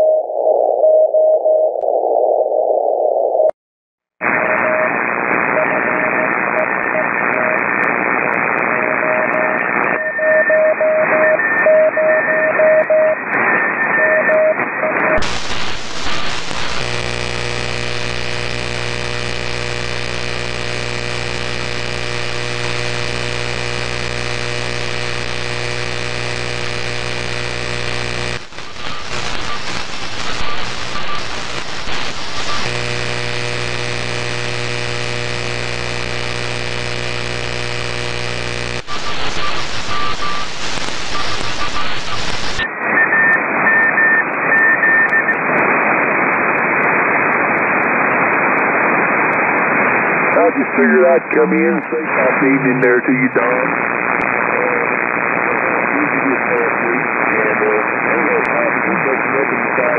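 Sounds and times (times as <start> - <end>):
keyed radio tone: 4.2 - 45.9, 50.3 - 59.9
radio hiss: 4.2 - 59.9
electrical interference buzz: 13.3 - 42.7.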